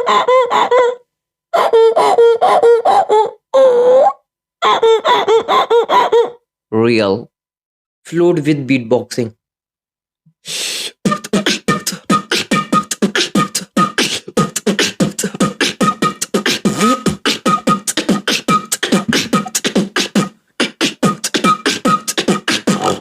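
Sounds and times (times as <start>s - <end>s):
vocal beatboxing: 10.4s - 23.0s.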